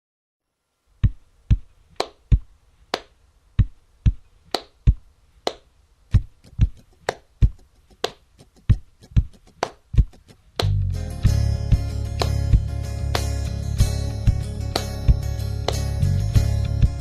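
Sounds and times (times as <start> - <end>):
drum beat with kick and snare: 1.0 - 2.5, 3.6 - 5.1, 6.1 - 7.7, 8.6 - 17.0.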